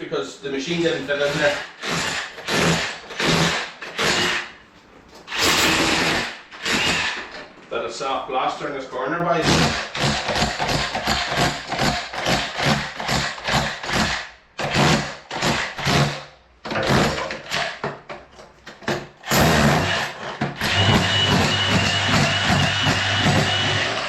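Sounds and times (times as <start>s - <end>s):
hand tool scraping concrete: 0.8s - 4.3s, 5.3s - 7.0s
power tool whining: 5.3s - 7.3s, 19.3s - 24.0s.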